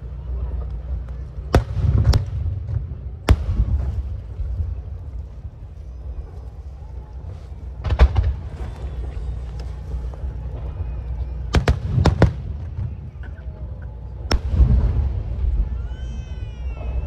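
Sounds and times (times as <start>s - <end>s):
low rumble: 0.0s - 17.0s
fireworks sharp bangs: 1.4s - 5.0s, 7.7s - 15.8s.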